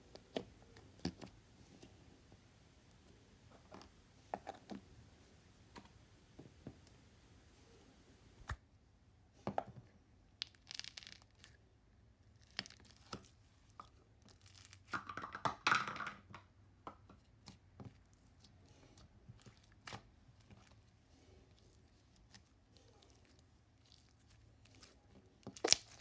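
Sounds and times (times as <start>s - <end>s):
slime crackling and popping: 10.4s - 11.6s, 14.3s - 15.0s, 23.0s - 26.0s.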